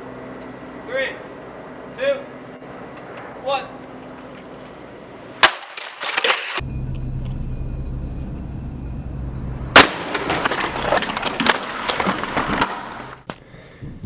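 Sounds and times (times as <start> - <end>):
low hum: 0.0 - 13.2
plastic parts rattling and clattering: 5.4 - 6.6
vacuum cleaner crashing on ground: 5.4 - 6.6.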